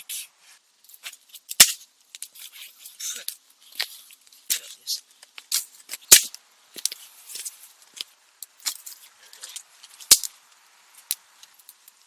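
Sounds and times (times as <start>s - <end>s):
rustling: 0.0s - 12.0s
sharp snap: 5.5s - 6.4s.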